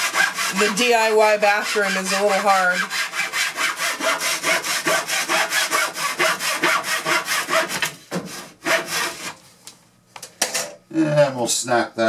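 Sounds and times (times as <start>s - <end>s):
hand saw cutting wood: 0.0s - 9.4s.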